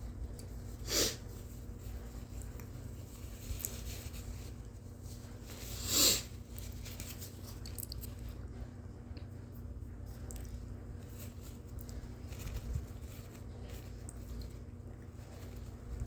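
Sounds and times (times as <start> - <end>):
rustles: 0.0 - 8.4, 9.6 - 16.0.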